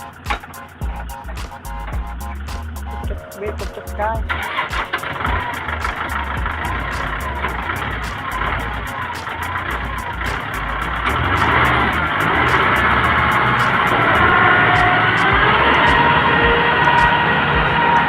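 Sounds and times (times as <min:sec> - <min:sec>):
excavator engine running: 0:00.0 - 0:18.0.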